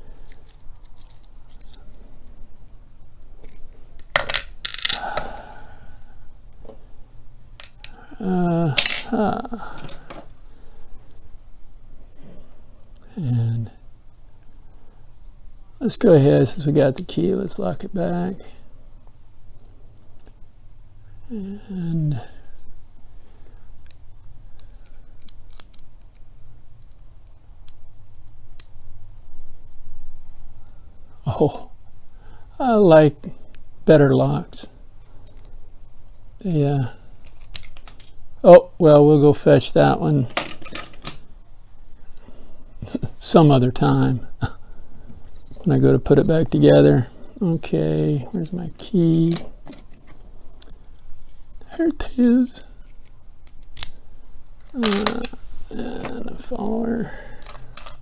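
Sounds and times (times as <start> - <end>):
faint low hum: 0.0 - 58.0
small metal parts clinking: 0.2 - 1.8, 3.4 - 5.1, 48.1 - 51.5, 57.4 - 58.0
person humming: 7.9 - 10.1, 21.2 - 22.4.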